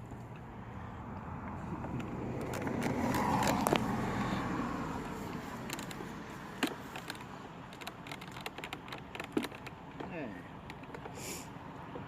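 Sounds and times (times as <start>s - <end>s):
car passing by: 0.6s - 6.8s
sharp clicks: 6.6s - 11.2s.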